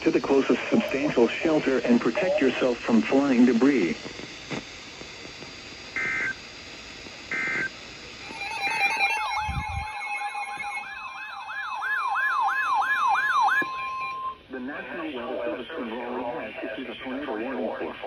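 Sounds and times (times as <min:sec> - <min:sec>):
short electronic beeps: 0:08.3 - 0:11.8
rising and falling siren wail: 0:08.3 - 0:14.4.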